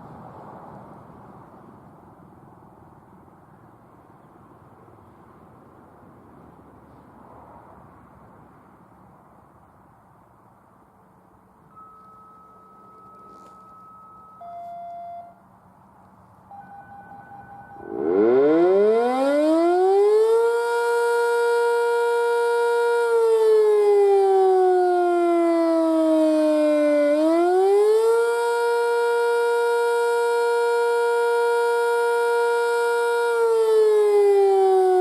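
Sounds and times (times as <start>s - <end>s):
warning siren wailing: 12.8s - 15.4s, 16.5s - 35.0s.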